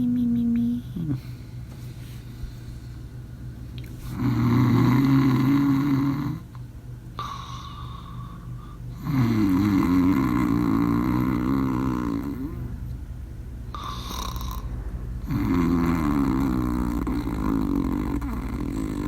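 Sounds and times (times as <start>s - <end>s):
low steady hum: 0.0s - 19.0s
person snoring: 4.1s - 6.5s, 7.2s - 12.7s, 13.7s - 19.0s.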